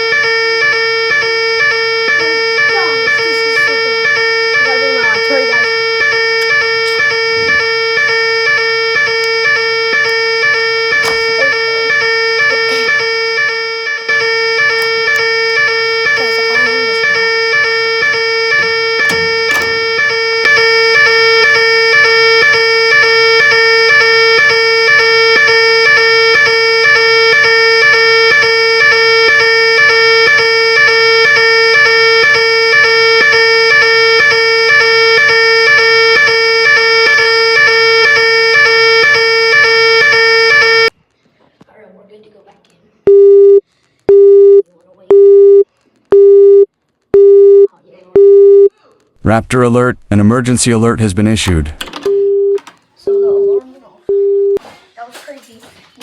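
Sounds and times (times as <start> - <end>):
fire alarm tone: 0.0 - 41.0, 43.1 - 48.7, 51.9 - 54.6.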